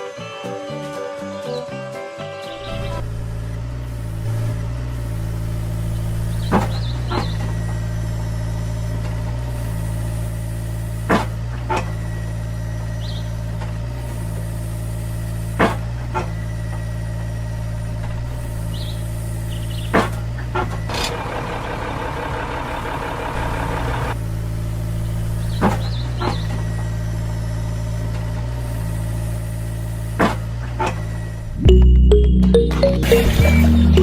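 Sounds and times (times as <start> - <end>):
engine idling: 16.7 - 28.6.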